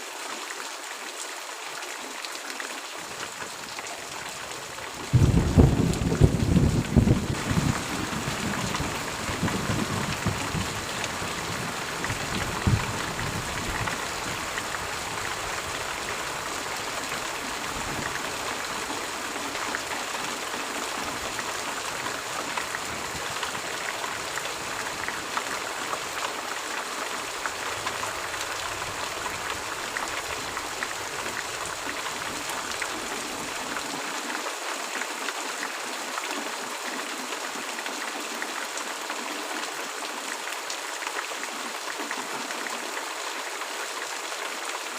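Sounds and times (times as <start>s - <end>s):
rain falling: 0.0s - 44.9s
thunder rumble: 5.1s - 11.0s.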